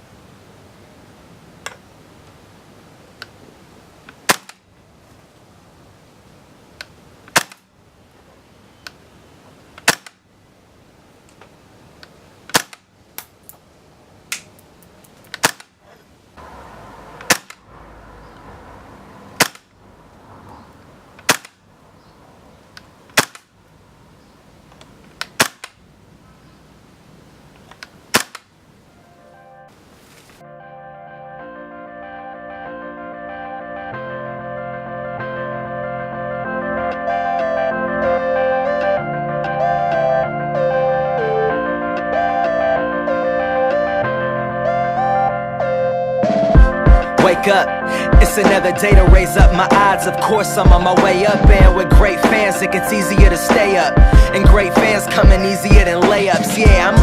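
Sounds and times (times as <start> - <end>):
airsoft gun shots: 4.2 - 4.6, 7.3 - 7.7, 9.8 - 10.2, 12.5 - 12.8, 15.4 - 15.7, 17.2 - 17.6, 19.4 - 19.7, 21.2 - 21.6, 23.2 - 23.5, 25.3 - 25.8, 28.1 - 28.5.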